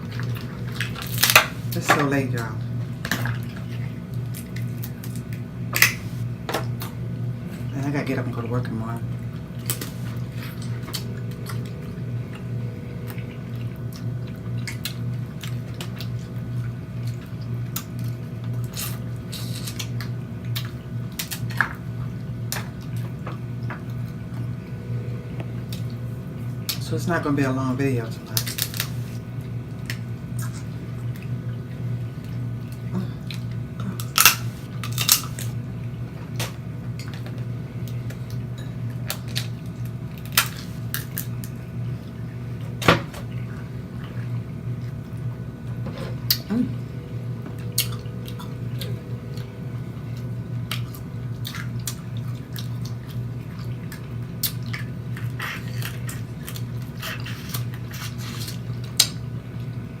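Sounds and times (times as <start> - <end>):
steady low hum: 0.0 - 60.0
lip-smacking and chewing: 9.6 - 23.1, 29.8 - 35.5, 47.6 - 59.8.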